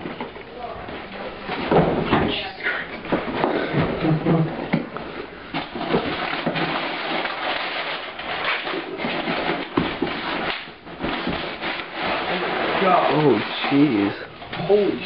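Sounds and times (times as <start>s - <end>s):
packaging rustling and crinkling: 5.5s - 14.8s.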